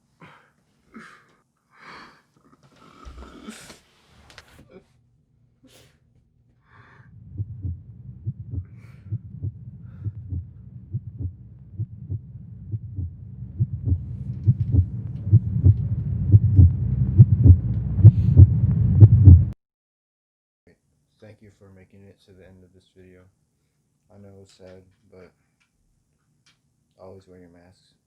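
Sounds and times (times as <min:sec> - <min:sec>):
heartbeat: 0:07.1 - 0:19.6.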